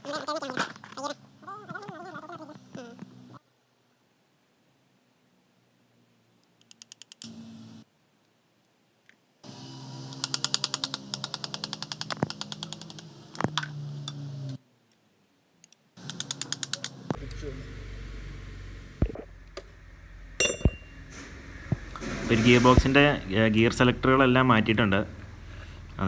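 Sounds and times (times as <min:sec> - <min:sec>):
rapid rattling tool clicks: 0:06.6 - 0:07.4, 0:10.1 - 0:13.1, 0:16.0 - 0:17.0
low steady hum: 0:17.1 - 0:26.0
sharp metal knocks: 0:19.0 - 0:22.9.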